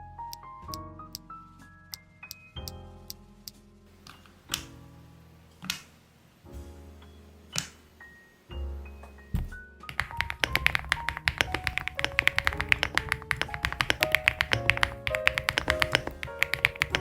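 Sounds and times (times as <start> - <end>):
soft melodic music: 0.0 - 17.0
mechanical keyboard typing: 9.9 - 17.0.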